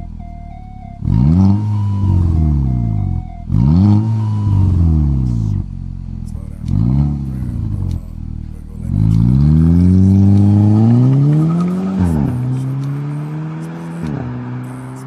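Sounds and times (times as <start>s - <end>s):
car engine revving hard: 1.0s - 15.0s.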